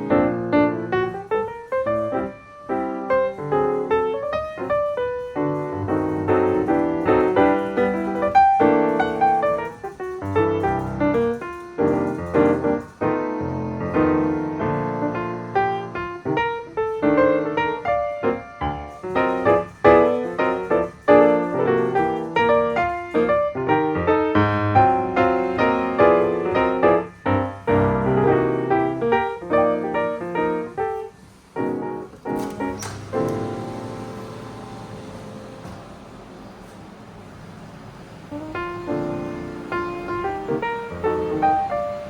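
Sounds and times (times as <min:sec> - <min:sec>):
piano music: 0:00.0 - 0:42.0.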